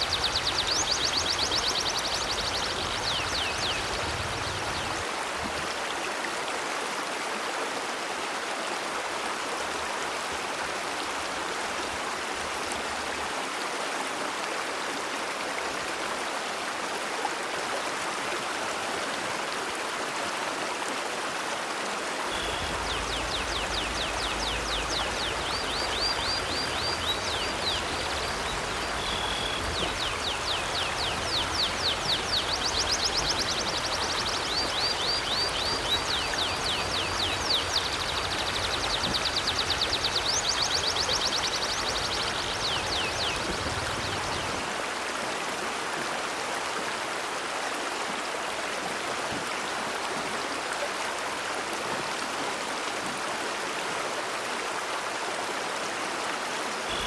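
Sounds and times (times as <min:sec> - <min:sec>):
river water flowing: 0:00.0 - 0:57.0
bird chirping: 0:22.3 - 0:44.4.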